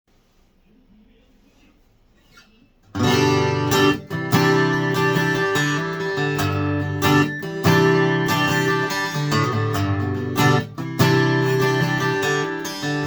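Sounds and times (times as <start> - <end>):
acoustic guitar strummed in chords: 2.9 - 13.0.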